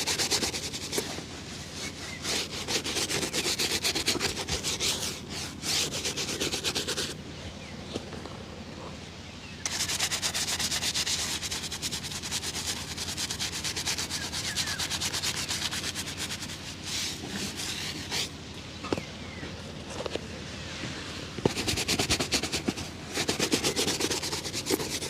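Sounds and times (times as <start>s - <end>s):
rubbing on a leather shoe: 0.0s - 7.2s, 9.7s - 18.4s, 21.4s - 25.0s.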